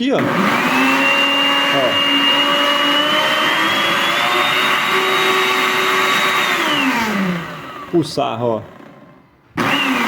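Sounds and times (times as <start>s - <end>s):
blender motor whining: 0.1s - 10.0s.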